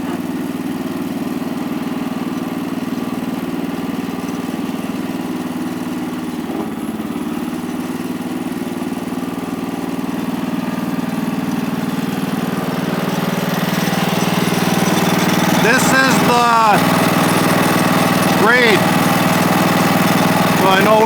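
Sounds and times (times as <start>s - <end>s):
engine running steadily: 0.0s - 21.0s.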